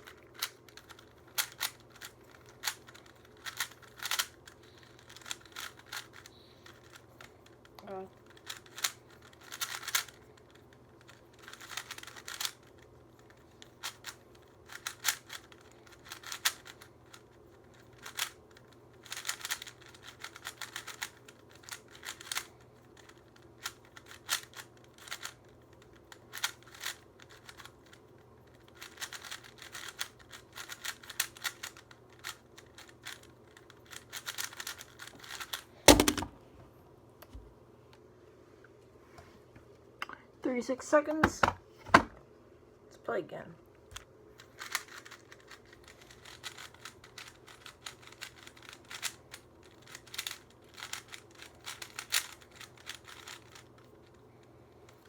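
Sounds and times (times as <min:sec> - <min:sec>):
plastic cube clicking: 0:00.0 - 0:07.0, 0:08.3 - 0:18.4, 0:19.0 - 0:25.4, 0:26.3 - 0:27.8, 0:28.8 - 0:36.3, 0:44.6 - 0:53.7.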